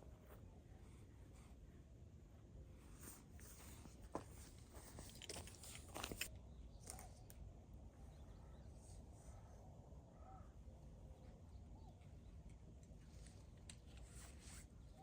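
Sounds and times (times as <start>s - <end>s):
faint crow cawing: 10.1s - 10.6s.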